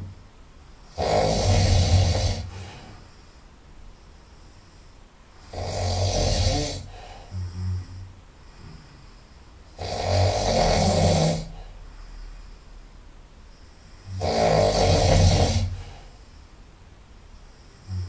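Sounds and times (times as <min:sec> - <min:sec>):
person snoring loudly: 0:00.9 - 0:02.8, 0:05.4 - 0:08.1, 0:09.8 - 0:11.6, 0:14.0 - 0:16.0, 0:17.8 - 0:18.0.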